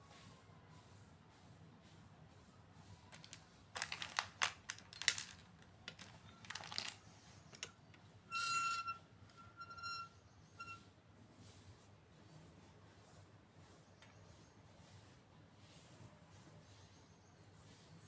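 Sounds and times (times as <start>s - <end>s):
small hard items clicking: 3.1s - 8.0s
high-pitched squeak: 8.3s - 10.8s.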